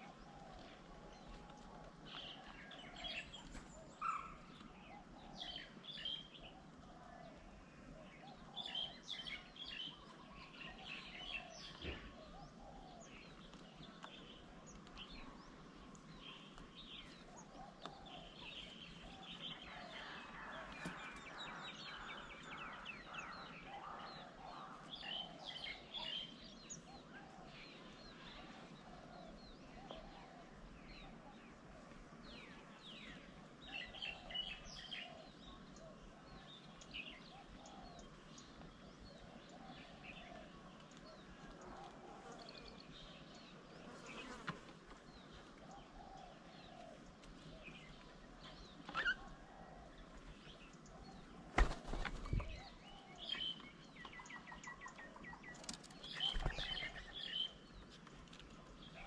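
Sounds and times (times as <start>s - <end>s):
wild birds chirping: 0.0s - 59.0s
low repeated bird call: 45.6s - 57.6s.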